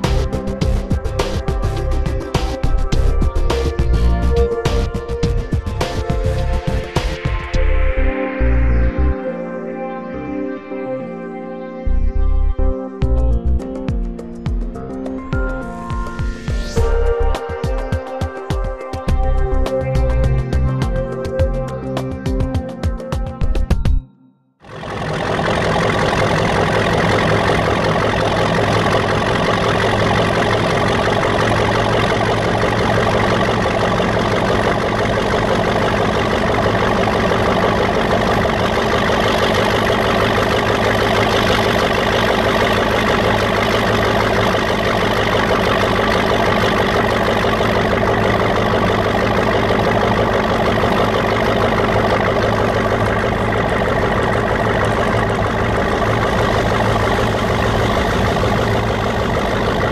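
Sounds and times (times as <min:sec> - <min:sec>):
diesel locomotive engine burbling: 0:00.0 - 0:09.1, 0:16.8 - 0:18.0, 0:24.7 - 0:59.9
faint turbocharger whine: 0:24.7 - 0:59.9.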